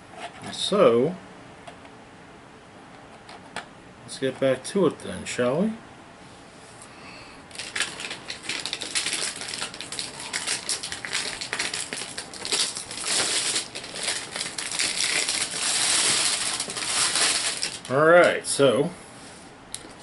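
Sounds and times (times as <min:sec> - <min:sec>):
packaging crinkling: 0:07.5 - 0:18.4.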